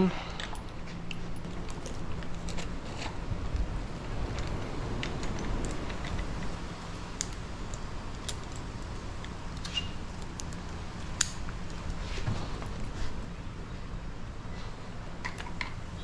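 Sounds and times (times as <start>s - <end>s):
light clicks and taps of parts: 15.2s - 15.8s.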